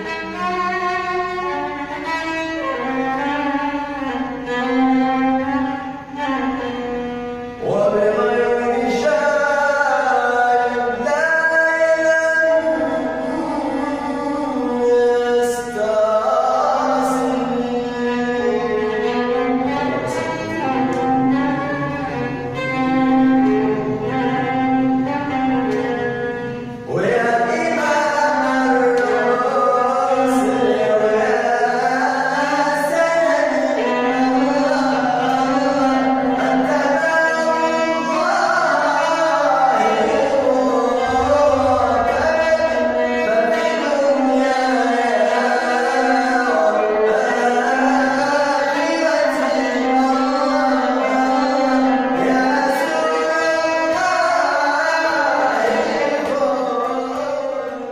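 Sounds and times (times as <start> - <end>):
string accompaniment: 0.0 - 57.9
melismatic devotional singing: 7.6 - 57.9
held low drone note: 40.3 - 43.4.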